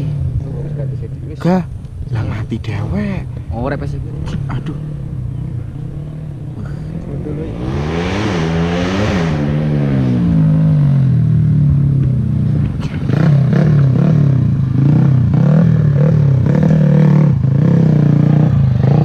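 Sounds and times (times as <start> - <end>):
motorcycle engine revving: 0.0 - 19.0.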